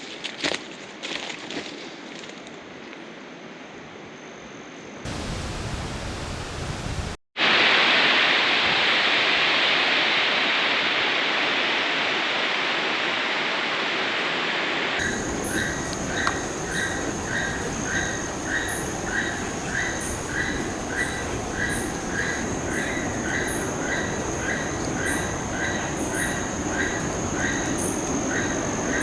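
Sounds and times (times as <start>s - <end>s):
waterfall rushing: 5.1s - 7.2s, 15.0s - 29.0s
soft hiss: 15.0s - 29.0s.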